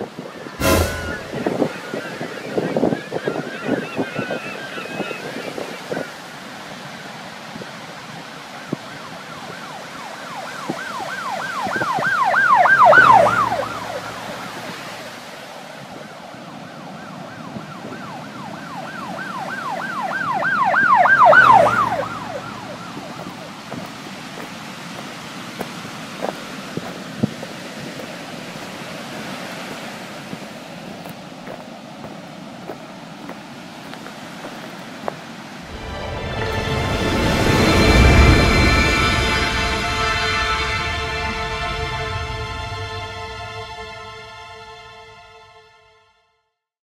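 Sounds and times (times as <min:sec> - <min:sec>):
surf-like noise: 0:00.0 - 0:44.4
emergency siren warbling yelp: 0:08.5 - 0:15.4, 0:16.0 - 0:23.9.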